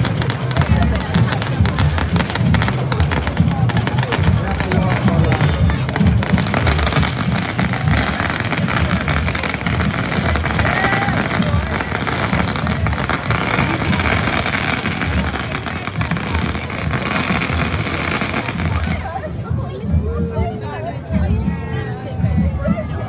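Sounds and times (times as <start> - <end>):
crowd noise: 0.0 - 23.0.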